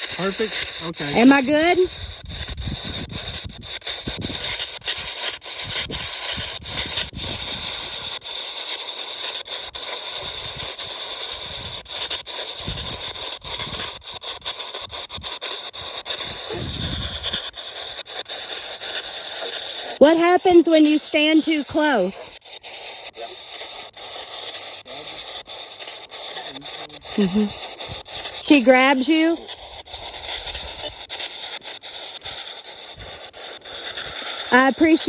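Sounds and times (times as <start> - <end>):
radio static hiss with rapid cuts: 0.0 - 1.9, 19.3 - 27.5, 28.4 - 31.1, 34.5 - 35.0.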